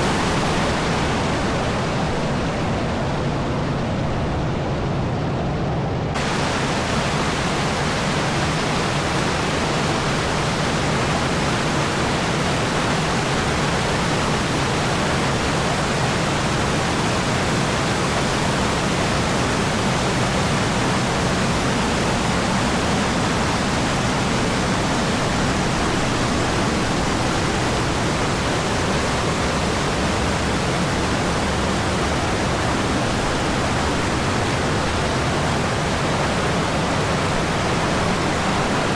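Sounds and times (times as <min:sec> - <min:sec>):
waterfall rushing: 0:00.0 - 0:04.0, 0:06.2 - 0:38.9.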